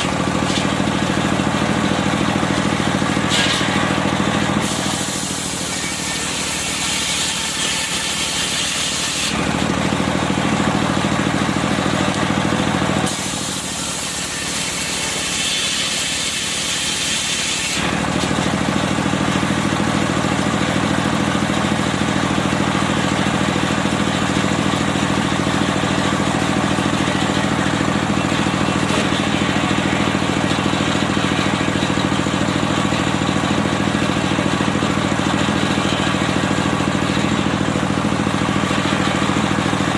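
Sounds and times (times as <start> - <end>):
circular sawmill engine running: 0.0 - 39.9
saw cutting wood hiss: 3.2 - 4.0, 4.6 - 9.5, 13.0 - 18.3.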